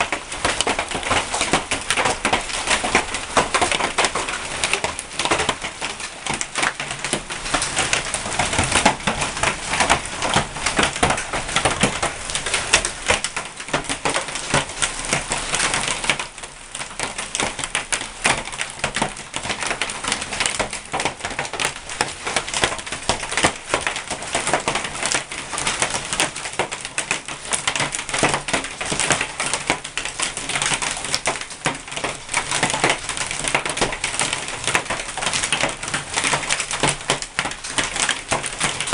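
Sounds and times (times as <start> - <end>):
hailstones clattering: 0.0 - 38.9.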